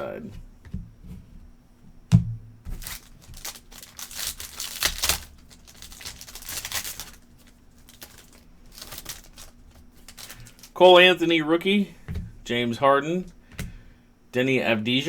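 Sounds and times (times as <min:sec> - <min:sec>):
cards being handled: 0:02.6 - 0:10.8
wrapper crinkling: 0:02.7 - 0:10.8.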